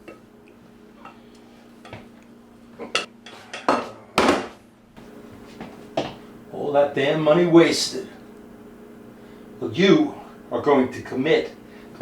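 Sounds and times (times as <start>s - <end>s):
cutlery scraping plate: 2.9s - 4.0s.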